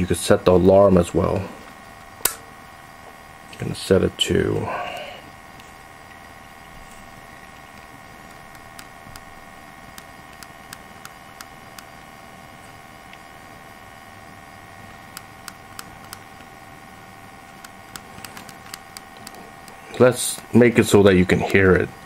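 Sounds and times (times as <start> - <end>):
steady electrical hum: 0.0 - 22.0.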